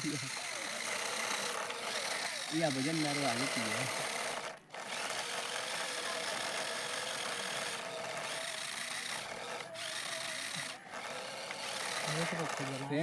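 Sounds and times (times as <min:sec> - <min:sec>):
toy car motor whirring: 0:00.0 - 0:13.0.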